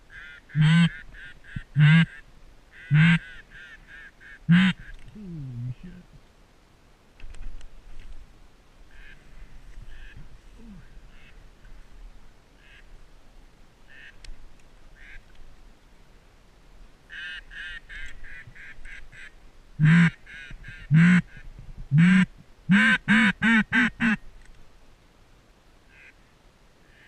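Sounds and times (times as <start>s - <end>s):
duck call quacking: 0.1s - 4.8s, 17.1s - 24.2s.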